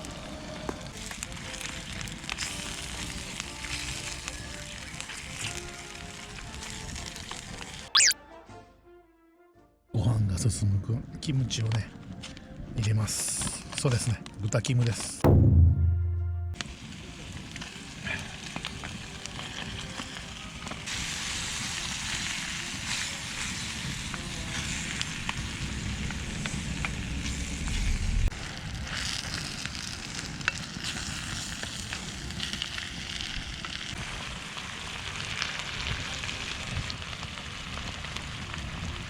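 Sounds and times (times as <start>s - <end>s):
meat sizzling in a pan: 0.0s - 7.9s, 16.7s - 39.0s
small crackles and clicks: 0.6s - 7.9s, 17.5s - 21.0s, 22.2s - 39.0s.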